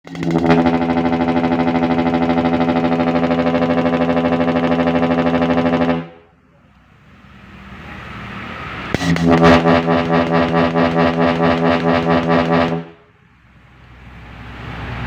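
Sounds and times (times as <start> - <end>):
electric air horns chord: 0.1 - 6.4, 7.5 - 13.1
faint rising noise: 6.3 - 9.0, 13.1 - 15.0.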